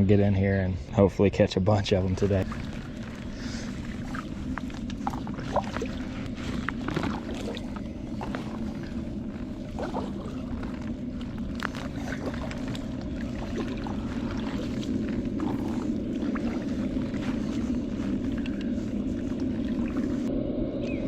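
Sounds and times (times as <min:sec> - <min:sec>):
steady low hum: 0:00.0 - 0:21.0
light water splashes: 0:01.9 - 0:20.3.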